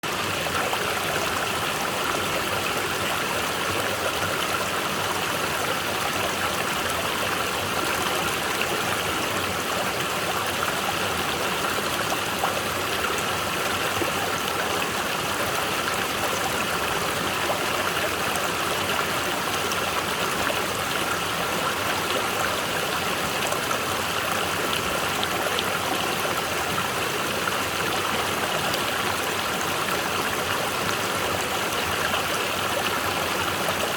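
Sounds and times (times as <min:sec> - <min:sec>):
stream rushing over rocks: 0:00.0 - 0:33.9.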